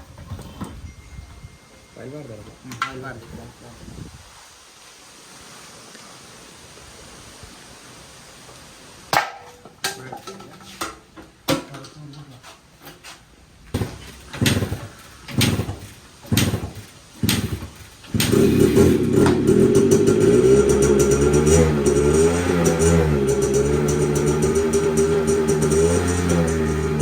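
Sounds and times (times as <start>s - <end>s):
faint hiss: 0.5s - 19.2s.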